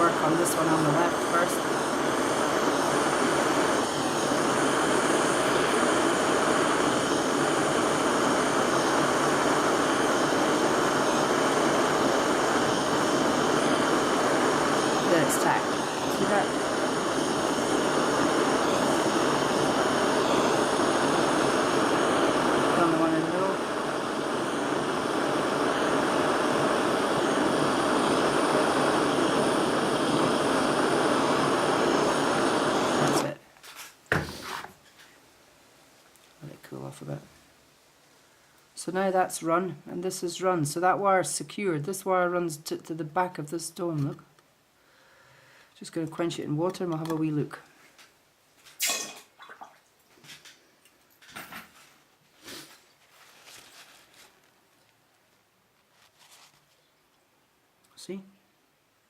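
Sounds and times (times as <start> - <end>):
torch flame roaring: 0.0 - 33.4.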